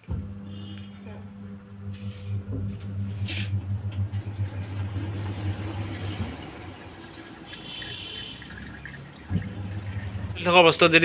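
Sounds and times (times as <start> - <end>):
steady low hum: 0.0 - 8.5, 9.2 - 11.0
water rushing into washing machine: 3.0 - 11.0.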